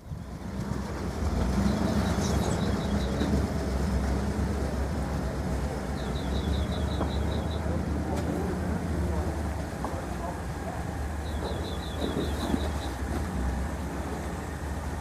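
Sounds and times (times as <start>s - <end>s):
off-road vehicle engine rumbling: 0.0s - 15.0s.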